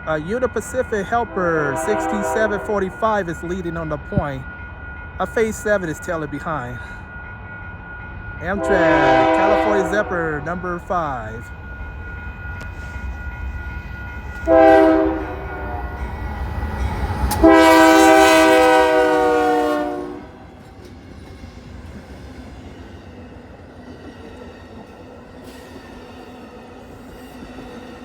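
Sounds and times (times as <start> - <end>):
low rumble of passing train: 0.0 - 28.0
locomotive air horn blasts: 1.2 - 2.7, 8.6 - 10.1, 14.4 - 16.0, 17.3 - 20.4.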